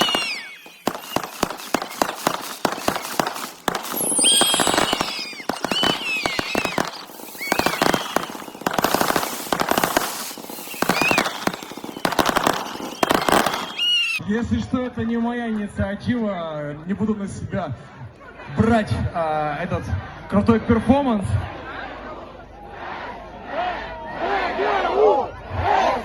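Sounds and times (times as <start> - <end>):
crowd whooping and screaming: 0.0 - 3.2, 3.9 - 14.2
firecrackers popping: 0.0 - 14.2.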